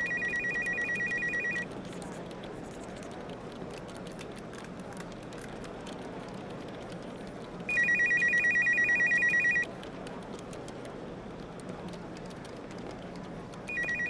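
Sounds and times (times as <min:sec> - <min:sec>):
telephone ringing: 0:00.0 - 0:01.7, 0:07.7 - 0:09.7, 0:13.7 - 0:14.0.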